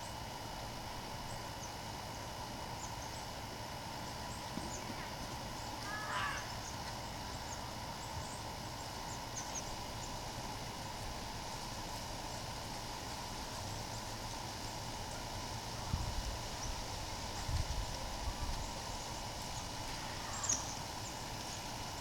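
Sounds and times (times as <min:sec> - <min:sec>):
low background hum: 0:00.0 - 0:22.0
birds chipping: 0:01.0 - 0:22.0
harsh bird call: 0:05.8 - 0:06.8, 0:20.0 - 0:20.8.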